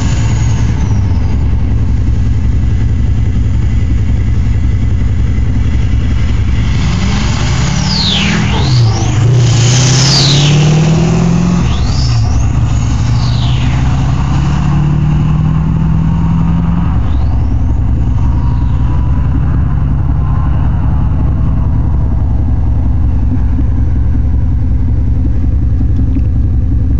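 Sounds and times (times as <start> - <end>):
diesel engine running loud: 0.0 - 26.9
turbo whistle: 7.6 - 14.4, 16.8 - 19.2.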